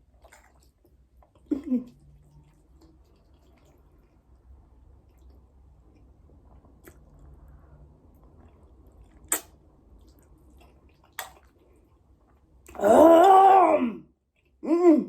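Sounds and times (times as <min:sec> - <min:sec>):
faint chewing: 0:00.0 - 0:13.4, 0:14.3 - 0:14.6
person groaning: 0:12.8 - 0:14.0.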